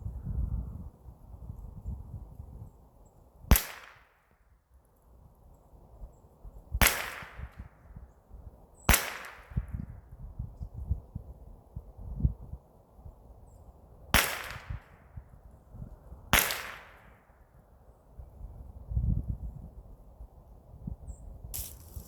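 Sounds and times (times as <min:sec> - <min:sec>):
rifle gunshots with echo: 0:03.5 - 0:04.0, 0:06.8 - 0:07.6, 0:08.9 - 0:09.6, 0:14.2 - 0:14.9, 0:16.4 - 0:17.2.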